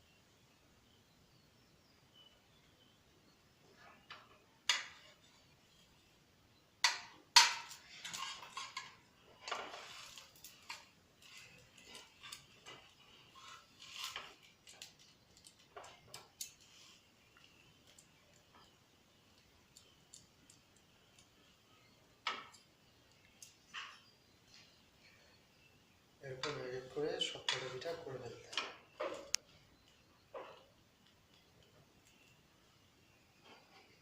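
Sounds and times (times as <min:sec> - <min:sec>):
spatula scraping frying pan: 0:07.9 - 0:14.5.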